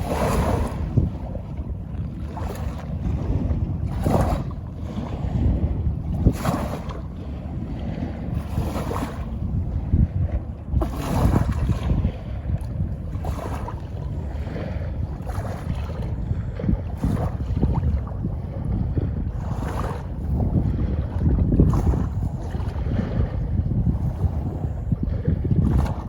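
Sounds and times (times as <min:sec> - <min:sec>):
river water washing against bank: 0:00.0 - 0:16.0
wind buffeting microphone: 0:00.0 - 0:26.0.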